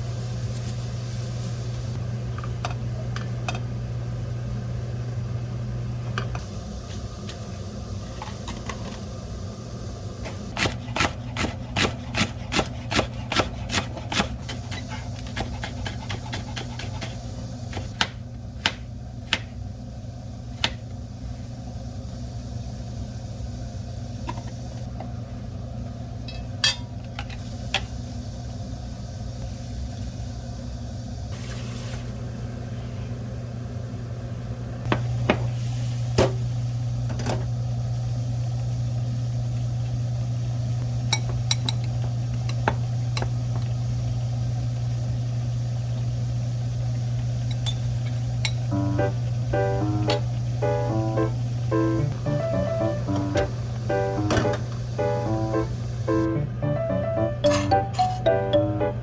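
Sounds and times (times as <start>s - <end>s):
steady low hum: 36.4s - 59.0s.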